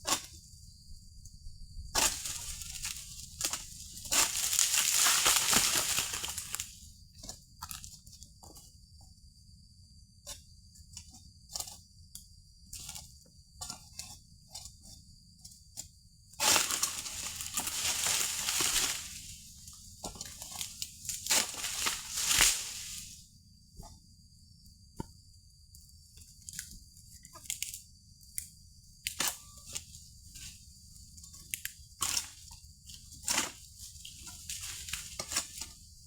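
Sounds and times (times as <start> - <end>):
leafy fronds crashing: 2.0 - 6.8, 16.4 - 19.6, 20.6 - 23.2
sharp cracks and snaps: 2.0 - 6.8, 20.6 - 23.1.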